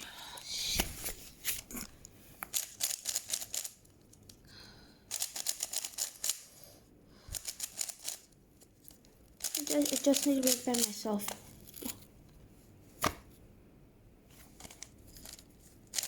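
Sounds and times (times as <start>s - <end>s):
puzzle cube clicking: 5.1s - 6.4s.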